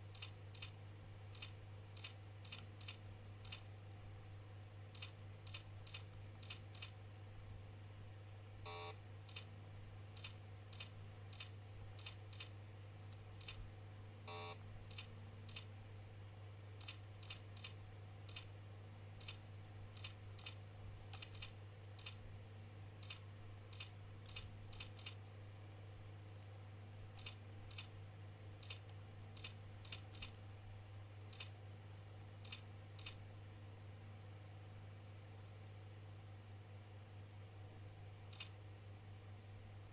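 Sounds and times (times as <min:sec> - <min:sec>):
steady low hum: 0:00.0 - 0:39.9
keyboard keystrokes: 0:00.1 - 0:03.6, 0:05.0 - 0:06.9, 0:13.4 - 0:13.6, 0:14.9 - 0:15.7, 0:16.8 - 0:18.5, 0:19.2 - 0:19.4, 0:20.0 - 0:22.2, 0:23.0 - 0:25.2, 0:27.2 - 0:27.9, 0:28.6 - 0:28.8, 0:29.4 - 0:30.4, 0:31.3 - 0:31.5, 0:32.4 - 0:33.2, 0:38.3 - 0:38.5.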